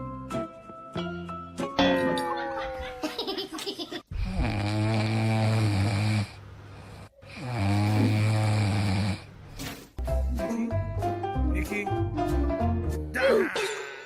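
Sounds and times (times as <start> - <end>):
music: 0.0 - 2.8, 10.0 - 13.5
loud snoring: 4.1 - 9.4.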